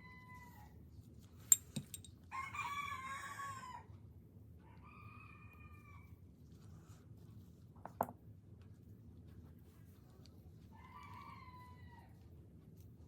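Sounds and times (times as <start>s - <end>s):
rooster crowing: 2.4s - 3.8s.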